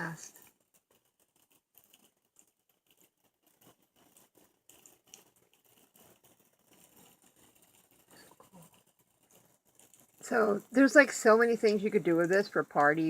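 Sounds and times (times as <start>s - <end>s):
faint small ticks: 0.2s - 10.4s.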